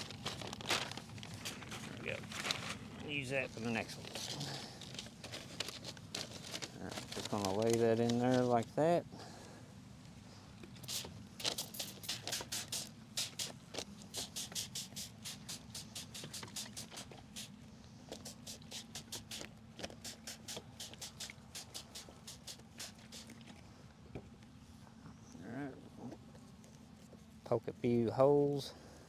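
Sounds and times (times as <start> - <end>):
newspaper crackling: 0.0 - 8.6.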